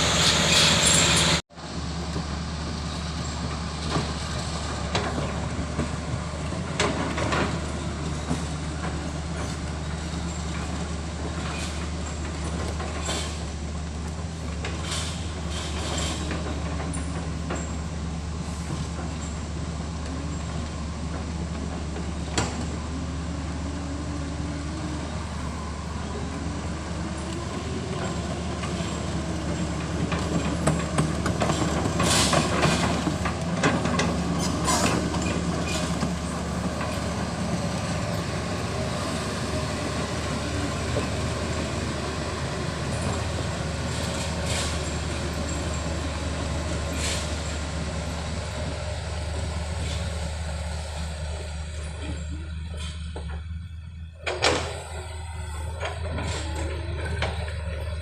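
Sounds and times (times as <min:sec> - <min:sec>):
heavy machine engine droning: 0:00.0 - 0:58.0.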